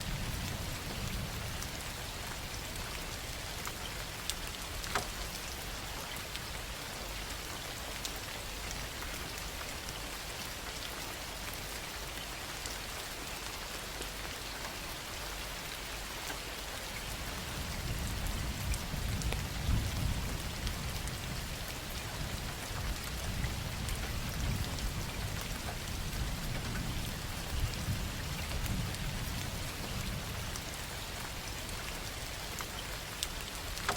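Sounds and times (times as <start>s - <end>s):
low rumble of thunder: 0.0s - 4.1s, 17.1s - 32.3s
heavy rain pouring: 0.0s - 33.9s
raindrop ticks: 3.6s - 6.5s, 21.9s - 27.6s, 32.5s - 33.9s.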